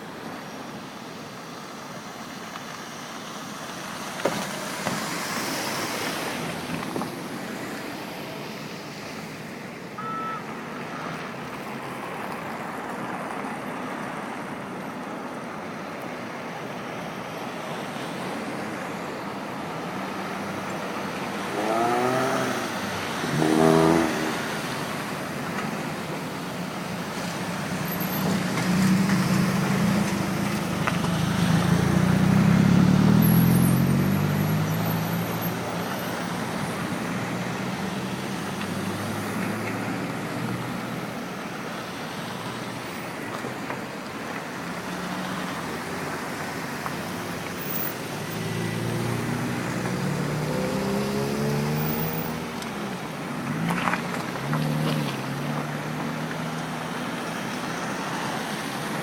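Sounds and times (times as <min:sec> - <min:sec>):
road traffic: 0:00.0 - 0:59.0
vehicle passing close by: 0:21.6 - 0:24.9, 0:28.4 - 0:35.7, 0:47.8 - 0:52.6.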